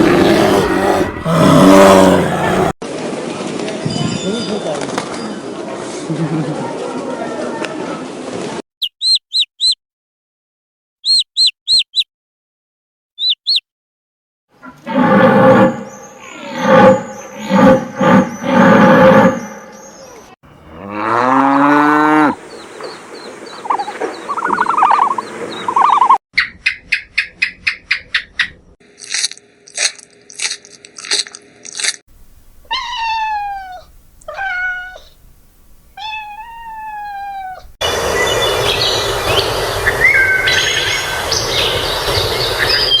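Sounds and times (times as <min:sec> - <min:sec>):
animal calls: 0:00.0 - 0:02.7, 0:23.6 - 0:26.2, 0:32.6 - 0:35.2, 0:36.0 - 0:37.8
falling swept cries: 0:00.0 - 0:02.8.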